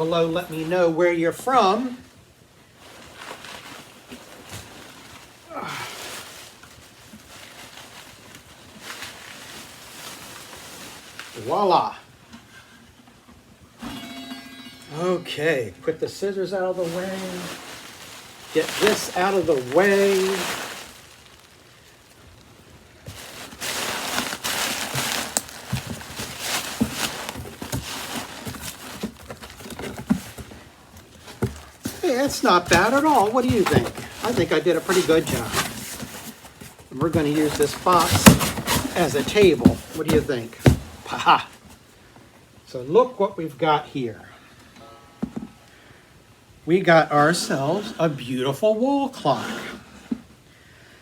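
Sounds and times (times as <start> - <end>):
packing material rustling: 2.6 - 12.0, 15.0 - 41.8.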